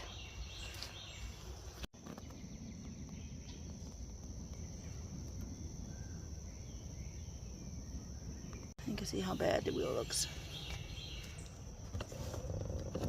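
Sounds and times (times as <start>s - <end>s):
insects chorus: 2.0s - 13.0s.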